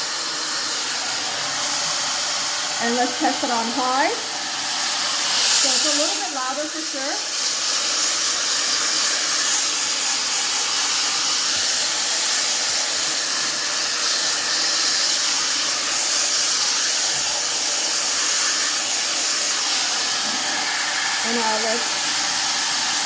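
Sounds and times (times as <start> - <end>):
hair dryer blowing: 0.0 - 23.0.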